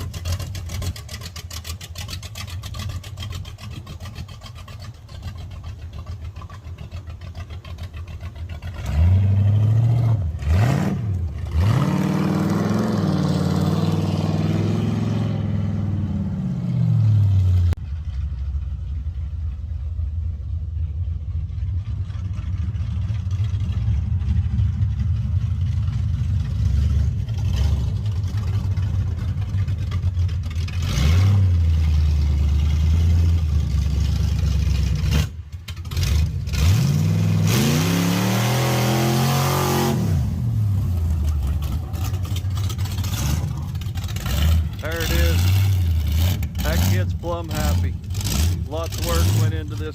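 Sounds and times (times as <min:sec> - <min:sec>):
vee eight engine revving: 0:05.9 - 0:17.8, 0:30.5 - 0:49.9.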